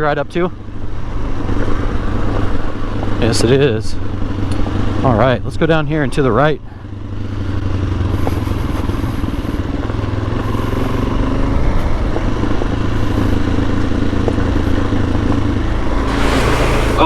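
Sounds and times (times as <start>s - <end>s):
motorcycle engine running: 0.1s - 17.0s
rushing hiss: 15.8s - 17.0s.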